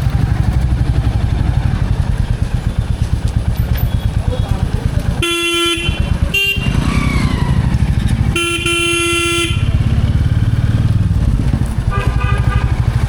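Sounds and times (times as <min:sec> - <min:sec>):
motorcycle engine pulsing: 0:00.0 - 0:13.0
vehicle horn: 0:05.2 - 0:06.9, 0:08.3 - 0:10.0, 0:11.9 - 0:13.0.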